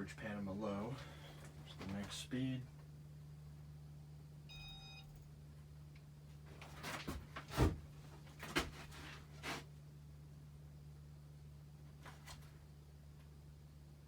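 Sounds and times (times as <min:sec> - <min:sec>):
ceiling fan motor humming: 0:00.0 - 0:14.0
brief high tone: 0:04.5 - 0:05.1.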